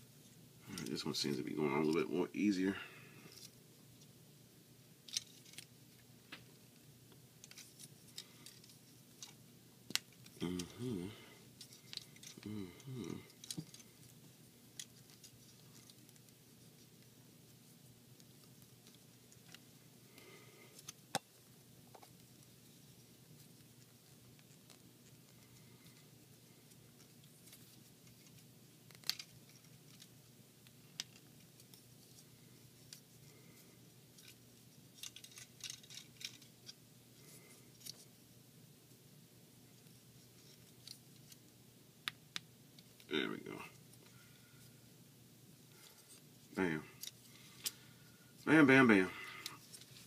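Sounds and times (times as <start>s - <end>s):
plastic parts clicking: 35.0s - 36.8s.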